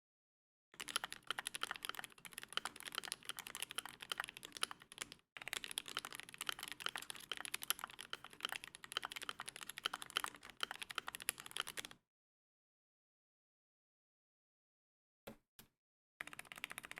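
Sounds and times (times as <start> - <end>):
mechanical keyboard typing: 0.8 - 12.0, 16.2 - 16.9.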